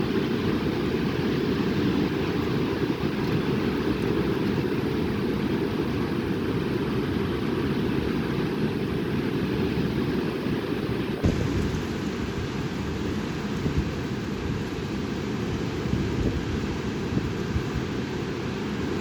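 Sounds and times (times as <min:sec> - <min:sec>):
strong wind buffeting microphone: 0:00.0 - 0:19.0
thump: 0:11.2 - 0:12.0.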